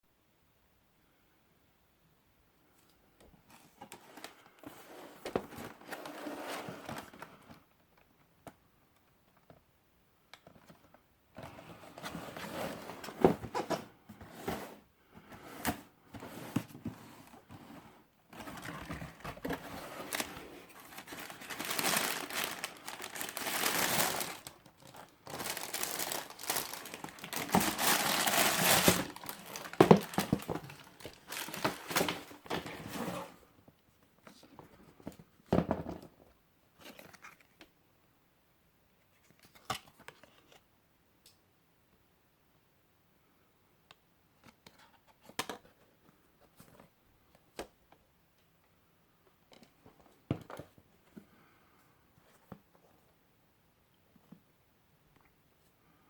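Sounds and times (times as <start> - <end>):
packaging crinkling and rustling: 18.3 - 33.0.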